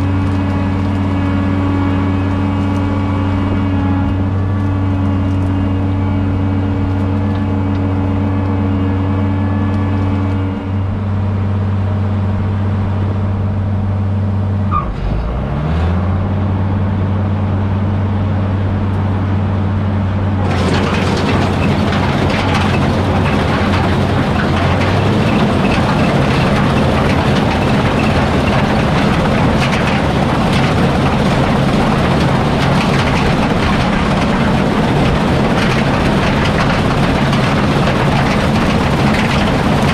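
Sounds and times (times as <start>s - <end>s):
heavy diesel engine running: 0.0s - 39.9s
loud rushing rattling noise: 20.3s - 39.9s.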